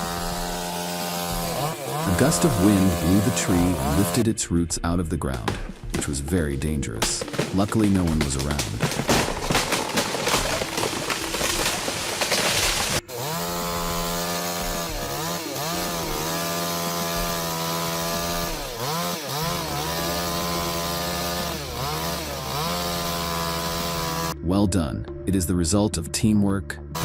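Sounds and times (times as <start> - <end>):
chainsaw cutting wood: 0.0 - 4.2, 7.0 - 24.4.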